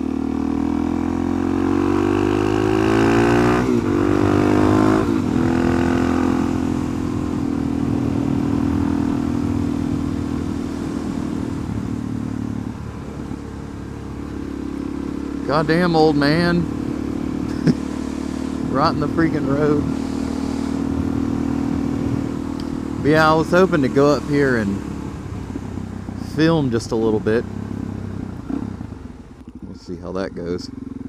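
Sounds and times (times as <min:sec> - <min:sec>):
motorcycle engine accelerating: 0:00.0 - 0:31.0.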